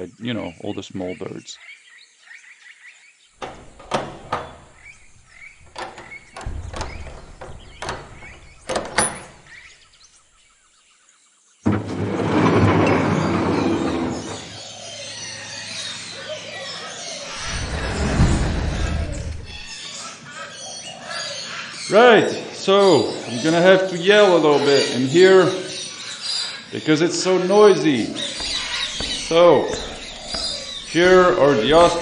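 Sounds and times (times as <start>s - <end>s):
many birds calling: 0.0s - 11.1s, 12.9s - 32.0s
hangar door knocking and squealing: 3.4s - 10.0s, 17.3s - 19.8s, 27.7s - 32.0s.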